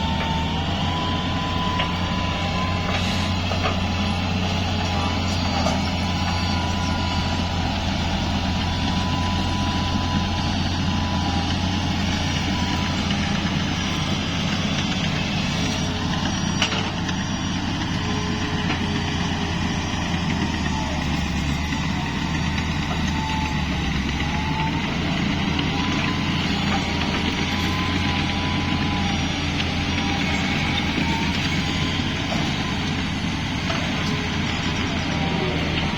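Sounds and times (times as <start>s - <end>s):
heavy machine diesel engine: 0.0s - 35.9s.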